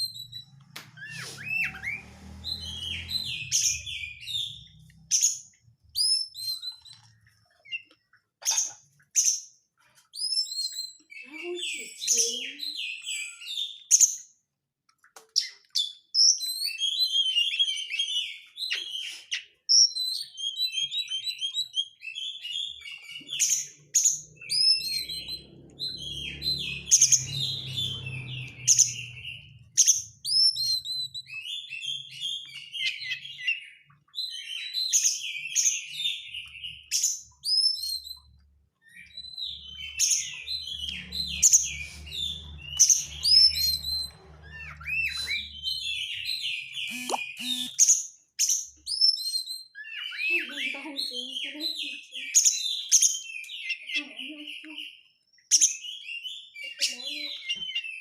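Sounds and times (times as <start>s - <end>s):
bird singing whistled notes: 0.0s - 7.0s, 16.2s - 50.8s
harsh bird chattering: 46.8s - 47.8s.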